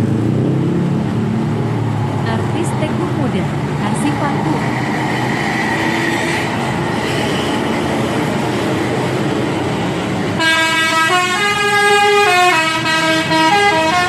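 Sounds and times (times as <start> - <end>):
bus engine: 0.0 - 14.0
multi-tone musical air horn: 10.4 - 14.0.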